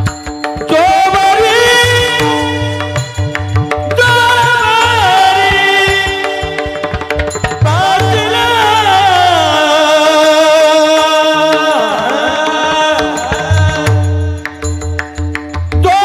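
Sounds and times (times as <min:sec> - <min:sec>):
hand drum beating: 0:00.0 - 0:09.7, 0:10.8 - 0:16.0
harmonium notes: 0:00.0 - 0:16.0
person singing ornamented vocal line: 0:03.9 - 0:07.0, 0:07.6 - 0:14.4.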